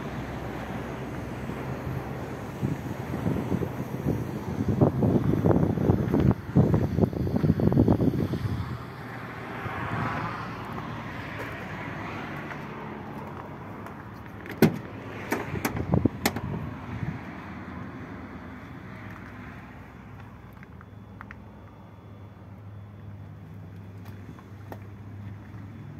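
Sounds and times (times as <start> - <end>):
vehicle engine running: 0.0 - 9.9.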